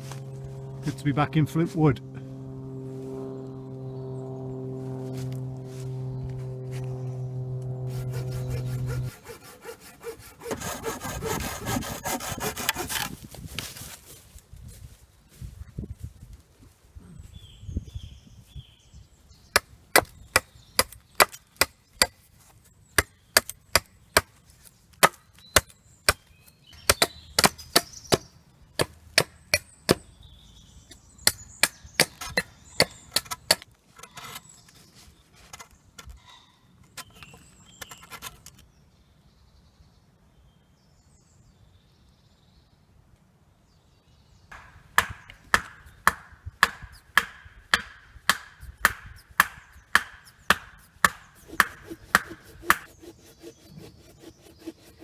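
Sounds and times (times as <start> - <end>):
wood being chopped: 19.5 - 22.2, 23.0 - 30.1, 30.9 - 33.7, 44.5 - 52.9.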